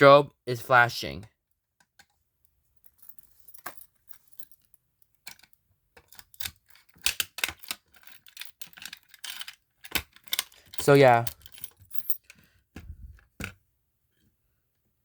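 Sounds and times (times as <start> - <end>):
hard objects clicking and rattling: 5.2 - 13.6.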